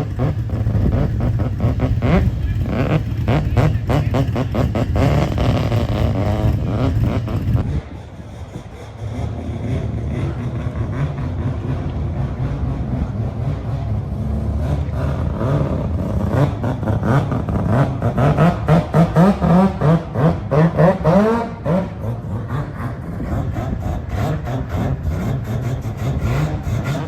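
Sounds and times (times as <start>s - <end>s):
car engine revving: 0.0s - 27.0s.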